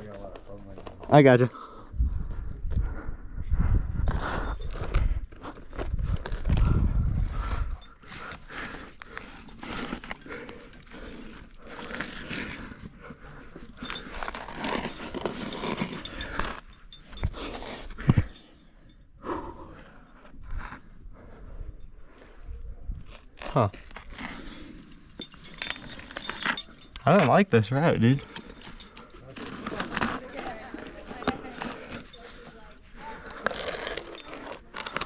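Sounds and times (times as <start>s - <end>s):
person breathing hard: 1.5s - 14.2s, 15.9s - 23.0s.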